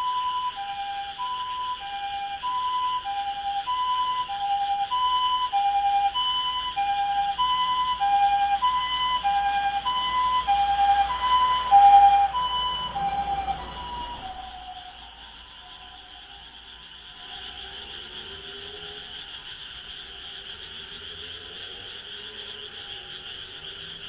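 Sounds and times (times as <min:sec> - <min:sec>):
ambulance two-tone siren: 0:00.0 - 0:19.0.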